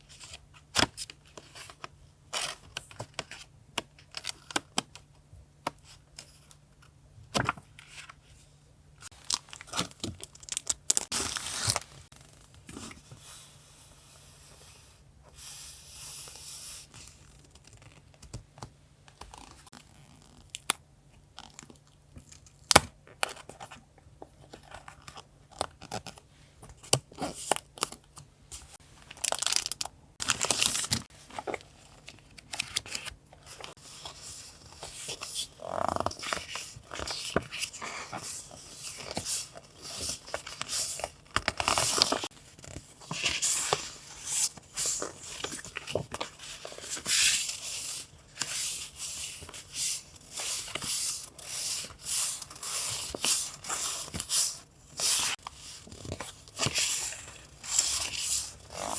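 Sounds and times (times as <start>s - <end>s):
paper rustling and tearing: 11.0s - 12.2s, 32.5s - 58.9s.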